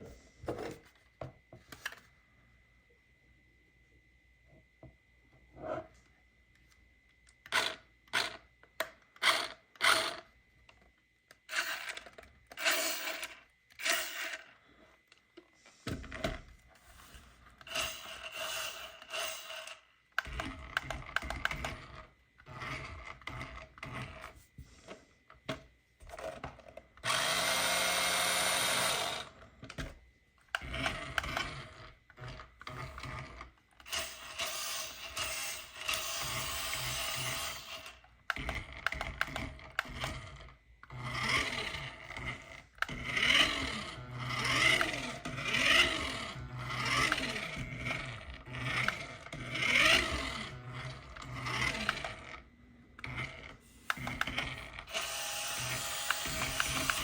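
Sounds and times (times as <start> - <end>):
toy car motor whirring: 9.2 - 10.3, 11.4 - 14.6, 17.0 - 24.4, 27.0 - 29.4, 30.5 - 57.0.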